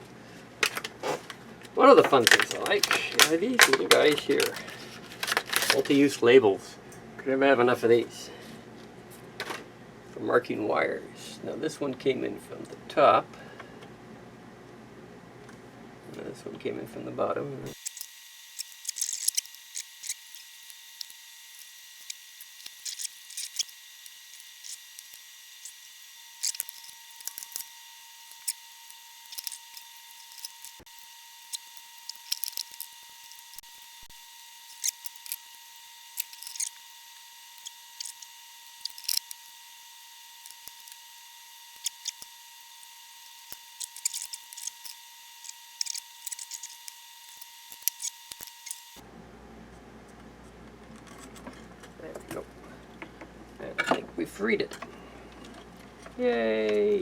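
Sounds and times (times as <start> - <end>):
small hand tools clicking and scraping: 2.0 - 6.0, 17.7 - 33.7, 34.7 - 36.9, 37.5 - 39.5, 40.4 - 41.1, 41.7 - 49.0, 50.4 - 53.2.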